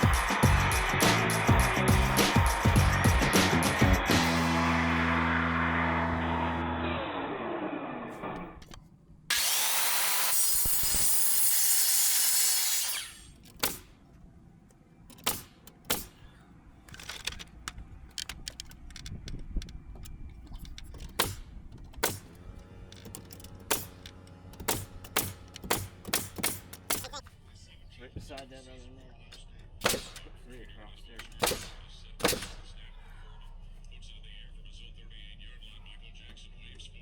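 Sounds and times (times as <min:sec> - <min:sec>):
background music: 0:00.0 - 0:07.2
power saw cutting board: 0:00.0 - 0:13.9, 0:21.2 - 0:27.2
nails being hammered: 0:09.3 - 0:14.0, 0:15.1 - 0:16.4, 0:20.9 - 0:22.4, 0:23.0 - 0:27.2, 0:29.8 - 0:30.4, 0:31.2 - 0:32.8.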